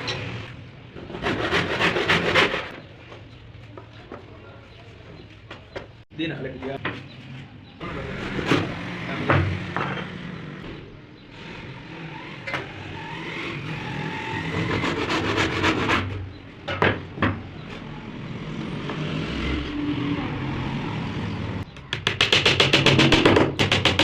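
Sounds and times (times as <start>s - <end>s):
sharp knocks: 21.8s - 24.0s.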